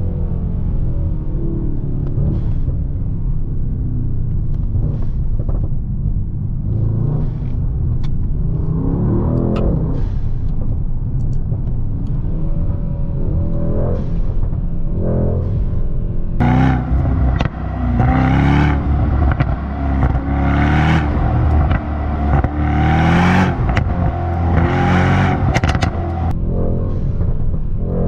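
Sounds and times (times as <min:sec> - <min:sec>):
car engine revving: 0:00.0 - 0:28.0
short sharp exhaust cracks: 0:16.4 - 0:28.0.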